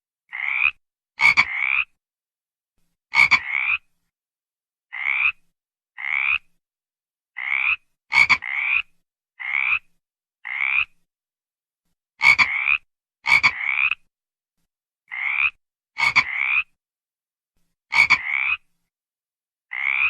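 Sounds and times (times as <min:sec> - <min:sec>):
frog croaking: 0:00.3 - 0:02.0, 0:03.1 - 0:03.9, 0:04.9 - 0:05.4, 0:06.0 - 0:06.6, 0:07.4 - 0:11.0, 0:12.2 - 0:14.1, 0:15.1 - 0:16.8, 0:17.9 - 0:18.7, 0:19.7 - 0:20.0.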